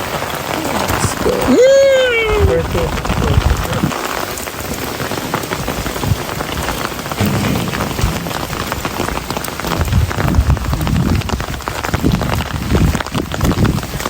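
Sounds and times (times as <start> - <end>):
heavy rain pattering: 0.0 - 14.0
low thuds: 7.2 - 11.6.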